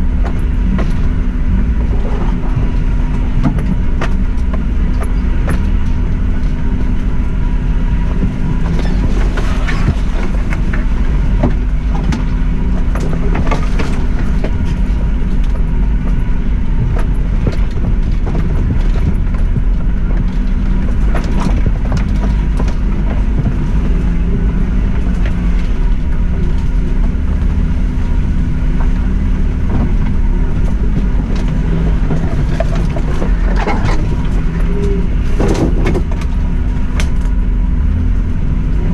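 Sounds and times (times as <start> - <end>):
car engine droning: 0.0 - 38.9
track rumble: 0.0 - 38.9
sharp knocks and scrapes: 16.8 - 38.0.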